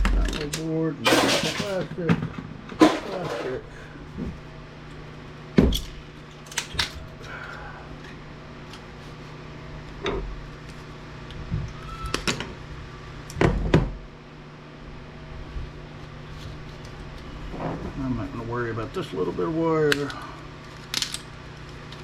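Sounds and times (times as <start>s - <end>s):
steady low hum: 0.0s - 22.0s
plastic parts clattering: 0.1s - 3.6s.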